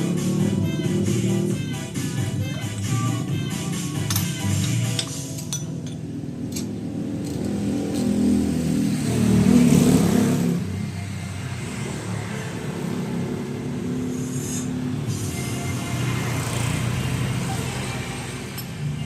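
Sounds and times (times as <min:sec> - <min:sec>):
motorcycle engine running and revving: 0:00.0 - 0:19.0.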